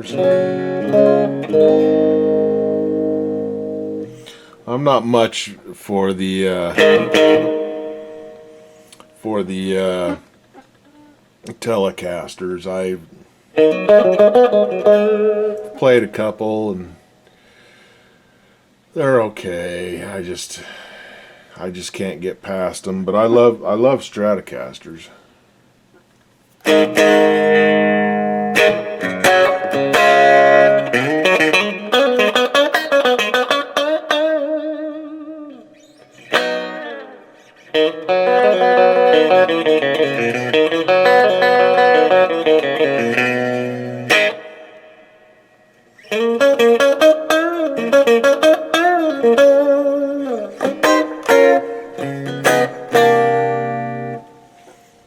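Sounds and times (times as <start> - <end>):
electric guitar playing: 0.0 - 5.1, 6.3 - 11.1, 13.5 - 16.4, 26.6 - 55.0.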